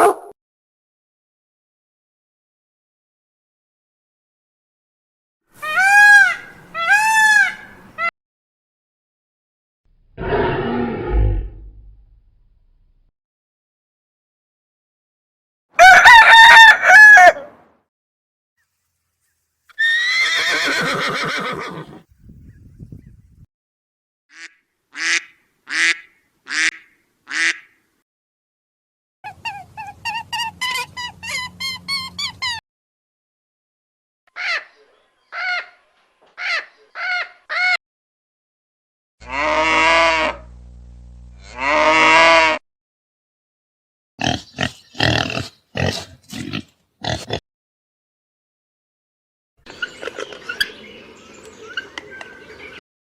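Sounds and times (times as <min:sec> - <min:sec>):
harsh wavering animal call: 0:10.2 - 0:12.0, 0:39.2 - 0:40.5, 0:41.4 - 0:42.6
rooster crowing: 0:15.8 - 0:17.5
cow mooing: 0:39.2 - 0:40.5, 0:41.4 - 0:42.6
low steady hum: 0:40.4 - 0:41.5.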